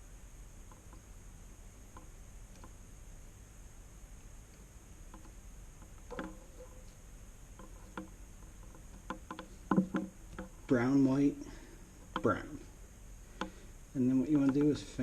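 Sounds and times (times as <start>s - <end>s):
steady low hiss: 0.0s - 15.0s
clicks of wires being handled: 4.2s - 11.0s, 11.9s - 12.7s, 13.3s - 15.0s.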